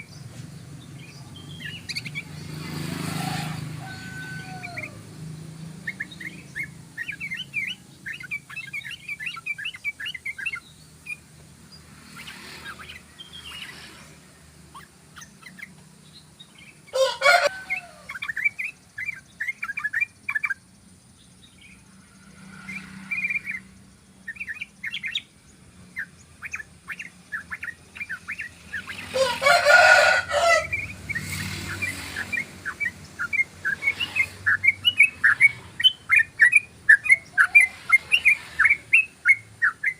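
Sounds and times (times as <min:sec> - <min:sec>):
loud full bird calls: 0:00.0 - 0:39.9.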